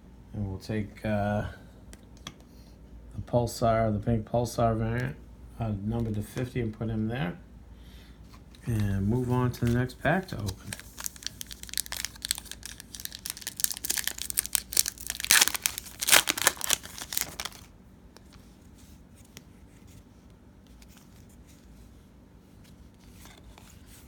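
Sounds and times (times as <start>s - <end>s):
faint handling noises: 8.2s - 24.0s
card pack wrapper tearing: 10.3s - 17.7s.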